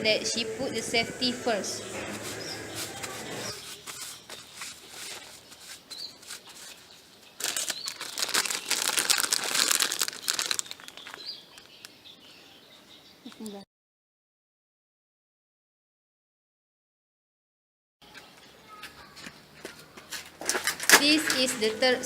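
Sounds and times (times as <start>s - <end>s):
crinkling and rustling: 2.0s - 11.9s, 18.9s - 22.0s.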